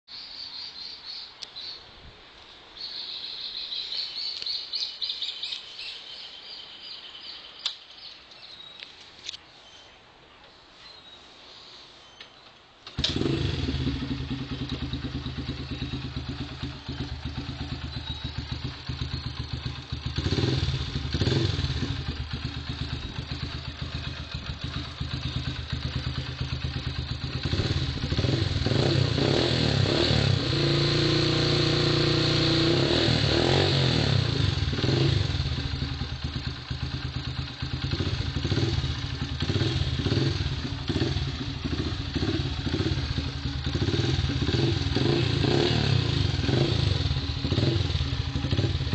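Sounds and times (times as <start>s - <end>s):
motorcycle engine idling and revving: 12.9s - 48.9s.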